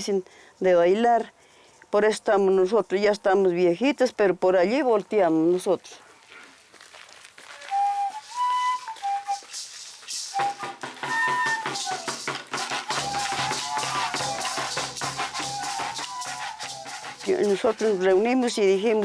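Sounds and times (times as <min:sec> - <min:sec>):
flute melody: 0:07.4 - 0:19.0
drum and percussion beat: 0:07.7 - 0:19.0.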